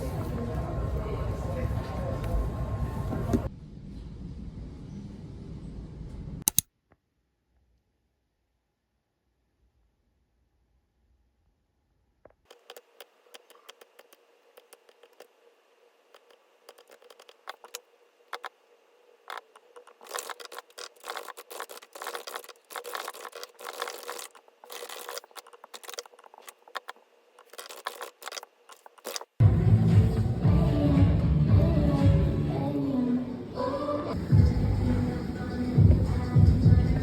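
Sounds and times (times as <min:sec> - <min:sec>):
scraping and tapping of small objects: 0:16.2 - 0:18.6, 0:19.3 - 0:29.4.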